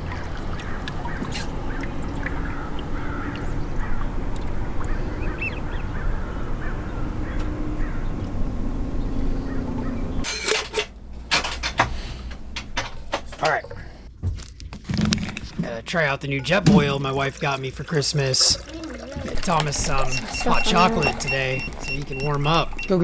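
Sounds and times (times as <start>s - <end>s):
boat motor humming: 0.0s - 14.1s, 18.8s - 23.0s
water and wind noise: 0.0s - 14.1s, 16.6s - 23.0s
sharp clicks and knocks: 10.2s - 14.1s.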